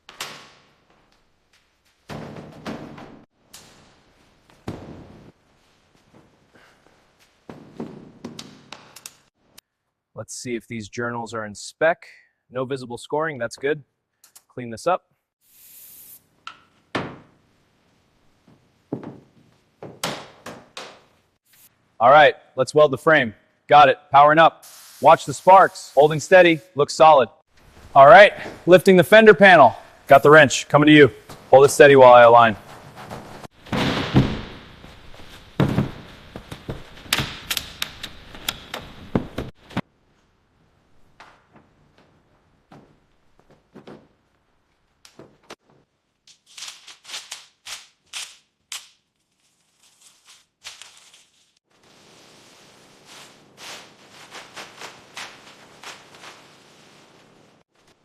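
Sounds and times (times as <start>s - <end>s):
knocks and thunks: 2.1s - 3.2s, 4.6s - 5.3s, 18.9s - 21.0s, 33.0s - 37.4s, 38.7s - 39.8s
hissing burst: 24.6s - 26.4s.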